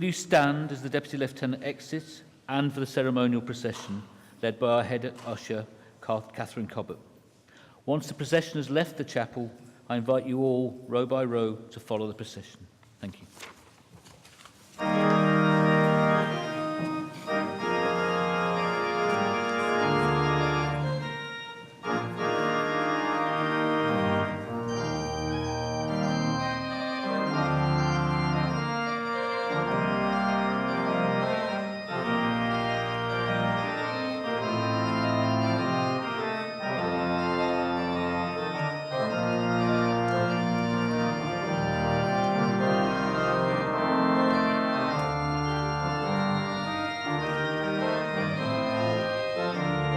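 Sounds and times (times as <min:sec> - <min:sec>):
organ playing chords: 0:14.8 - 0:49.9.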